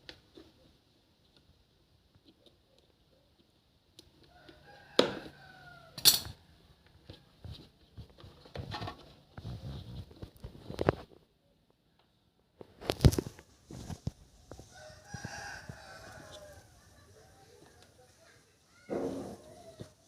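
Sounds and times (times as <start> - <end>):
rooster crowing: 4.3 - 6.1, 14.7 - 17.7.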